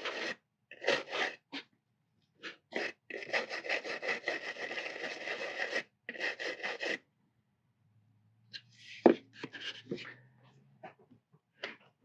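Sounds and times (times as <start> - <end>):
hand tool scraping plastic: 0.0 - 1.7, 2.4 - 7.0.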